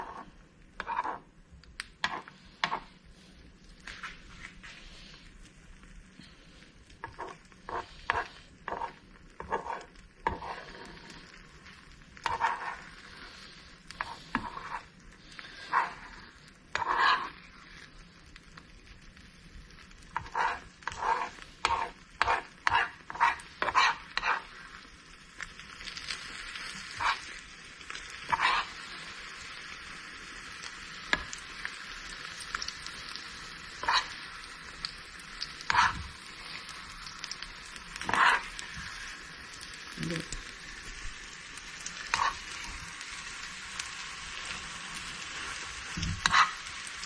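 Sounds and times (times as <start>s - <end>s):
utensil knocking and scraping pan: 0.0s - 1.2s, 2.0s - 2.9s, 7.0s - 11.0s, 12.2s - 12.8s, 20.2s - 24.5s
eggs sizzling in a pan: 0.0s - 47.0s.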